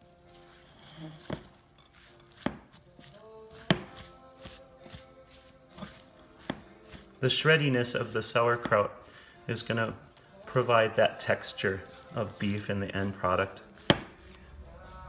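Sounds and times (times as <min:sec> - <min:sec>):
utensil knocking against a bowl: 0:03.6 - 0:05.0, 0:13.8 - 0:14.3.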